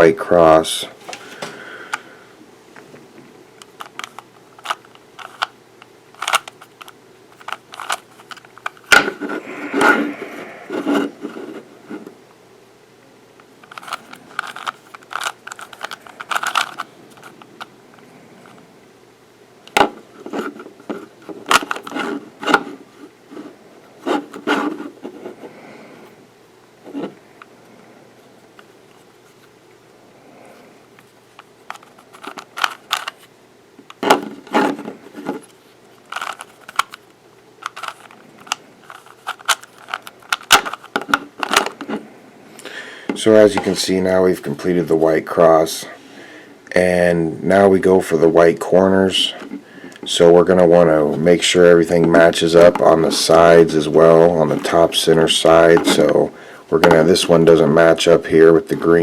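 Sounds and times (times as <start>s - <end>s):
puzzle cube clicking and scraping: 3.7s - 5.5s, 6.2s - 12.1s, 13.6s - 17.7s, 20.1s - 25.5s, 31.7s - 33.3s, 33.9s - 42.0s, 48.8s - 59.0s.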